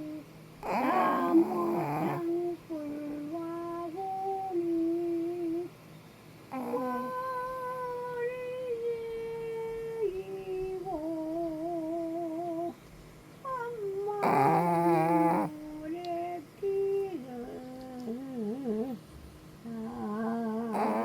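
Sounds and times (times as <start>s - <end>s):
puppy snoring: 0.0s - 3.0s, 6.5s - 7.8s, 14.1s - 15.8s, 17.4s - 19.0s, 19.7s - 21.0s.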